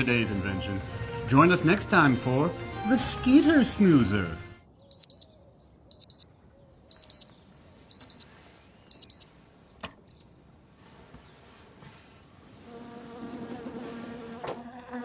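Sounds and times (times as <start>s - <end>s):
alarm clock double beeps: 4.9s - 5.2s, 5.9s - 6.2s, 6.9s - 7.2s, 7.9s - 8.3s, 8.9s - 9.3s.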